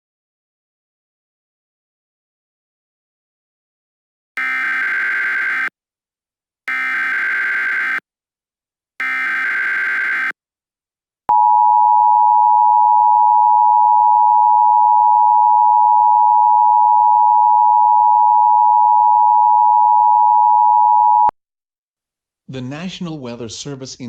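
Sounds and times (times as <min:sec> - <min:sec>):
buzzy digital data burst: 0:04.4 - 0:05.7, 0:06.7 - 0:08.0, 0:09.0 - 0:10.4
two-tone attention signal: 0:04.4 - 0:05.7.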